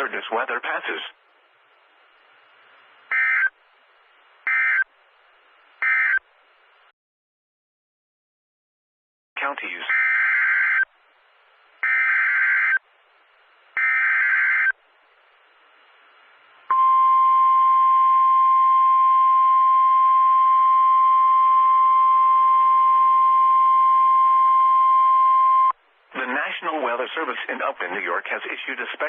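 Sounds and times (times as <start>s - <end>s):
steady warning alarm tone: 3.1s - 3.5s, 4.5s - 4.9s, 9.9s - 10.8s, 11.8s - 12.8s, 13.8s - 14.8s.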